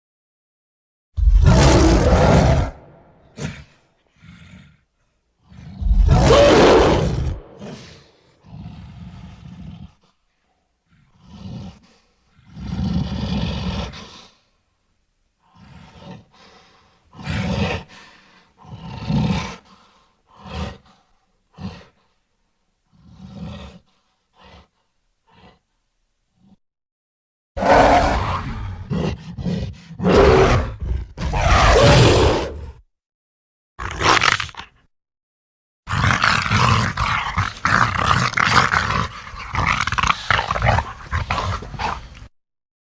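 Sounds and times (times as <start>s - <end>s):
gorilla roars and grunts: 1.2s - 10.2s, 10.9s - 14.4s, 15.5s - 22.1s, 22.9s - 24.7s, 27.6s - 32.8s, 33.8s - 34.9s, 35.9s - 42.3s.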